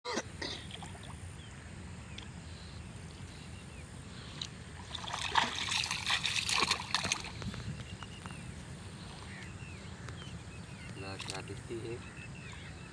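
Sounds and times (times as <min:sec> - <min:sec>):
water splashing and trickling: 0:00.5 - 0:01.3, 0:04.2 - 0:09.5, 0:10.2 - 0:12.7.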